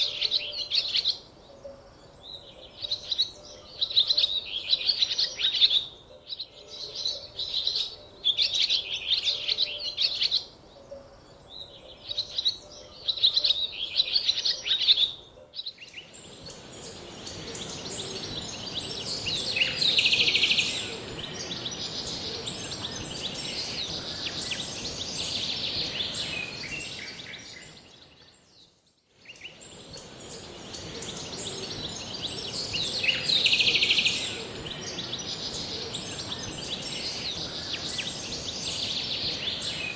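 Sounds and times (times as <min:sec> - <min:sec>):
high-pitched hiss: 0:15.8 - 0:28.0, 0:29.2 - 0:39.9
birds chirping: 0:16.0 - 0:28.2, 0:29.3 - 0:39.9.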